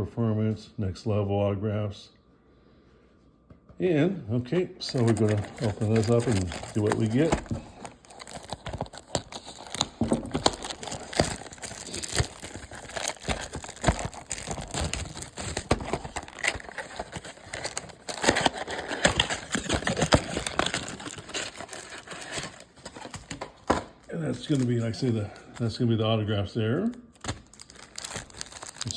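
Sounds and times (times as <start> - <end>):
packaging crinkling and tearing: 4.8 - 25.8, 26.9 - 28.9.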